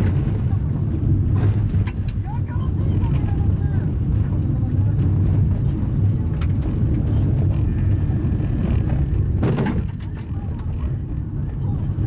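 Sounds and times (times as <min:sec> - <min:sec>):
tyres rumbling on gravel road: 0:00.0 - 0:12.0
gravel striking car: 0:09.3 - 0:10.2.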